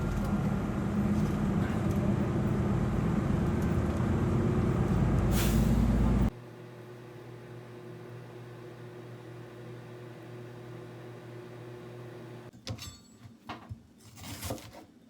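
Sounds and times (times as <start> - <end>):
large vehicle rumble: 0.0 - 6.3
air hiss: 5.3 - 5.9.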